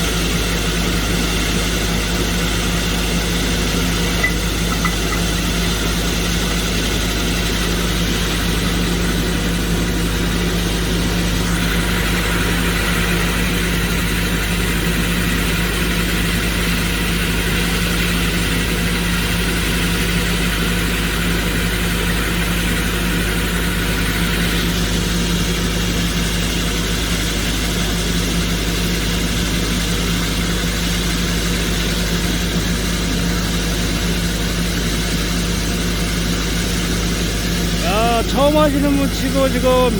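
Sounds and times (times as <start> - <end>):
excavator engine and hydraulics: 0.0 - 16.0.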